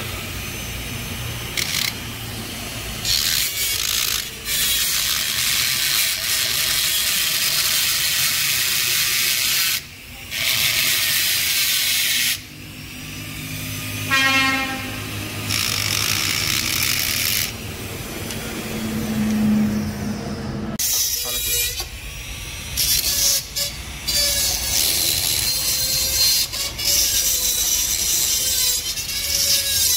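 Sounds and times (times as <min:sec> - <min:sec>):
high squeak: 0:18.9 - 0:22.0, 0:22.8 - 0:29.9.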